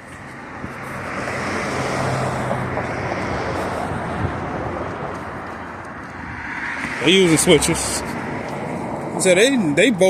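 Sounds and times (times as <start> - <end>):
vehicle passing by: 0.1 - 10.0.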